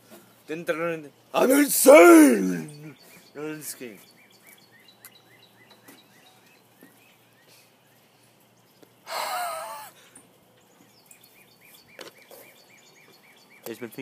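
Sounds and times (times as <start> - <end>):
person's breathy vocal noise: 1.4 - 2.9.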